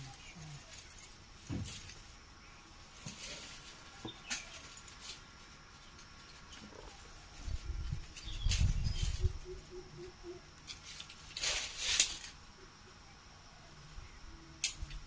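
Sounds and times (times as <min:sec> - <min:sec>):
crackling rustle: 0:00.0 - 0:12.6, 0:14.6 - 0:15.0
rustling and handling noises: 0:02.8 - 0:09.4.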